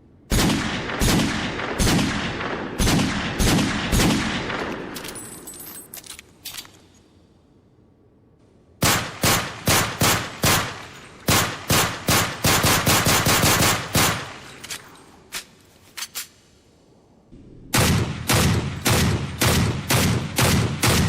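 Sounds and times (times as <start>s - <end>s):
gunshots: 0.3s - 5.2s, 8.8s - 14.6s, 17.7s - 21.0s.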